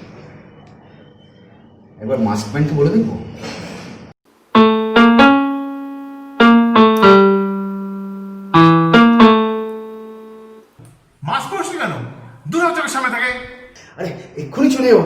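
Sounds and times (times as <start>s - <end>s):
piano notes ringing: 4.5s - 10.7s.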